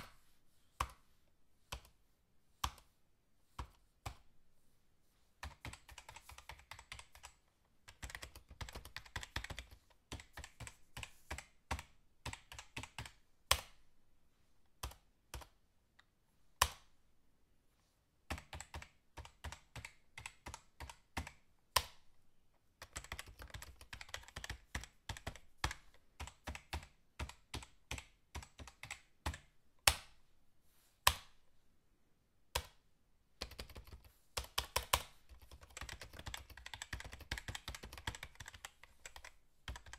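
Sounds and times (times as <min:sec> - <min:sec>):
computer keyboard typing: 0:05.4 - 0:13.8, 0:18.3 - 0:22.0, 0:22.8 - 0:30.0, 0:32.5 - 0:32.8, 0:33.4 - 0:39.9.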